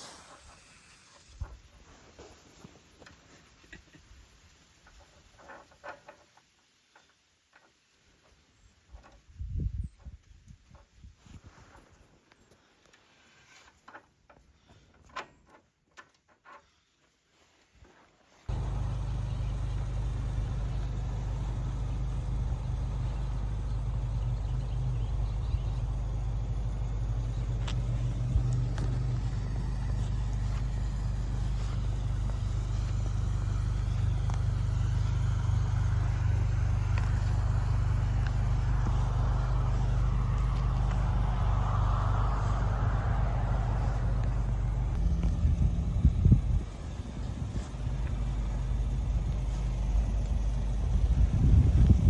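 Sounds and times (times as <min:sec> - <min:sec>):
faint clicks: 0:18.5 - 0:52.0
lawnmower engine running: 0:18.5 - 0:52.0.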